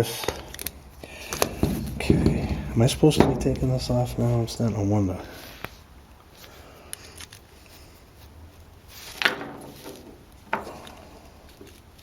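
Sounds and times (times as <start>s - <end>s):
plastic panel creaking: 0.5s - 4.8s.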